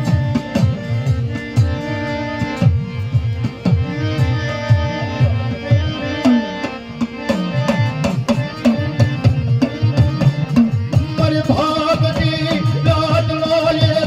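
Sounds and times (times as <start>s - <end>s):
held drone note: 0.0s - 11.4s
hand drum beating: 0.0s - 13.2s.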